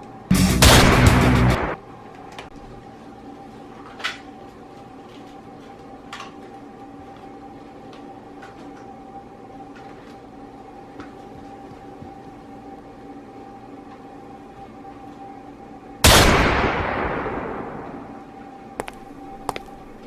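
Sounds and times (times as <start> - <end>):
steady hum: 0.0 - 20.0
loud burst of noise: 0.3 - 1.8.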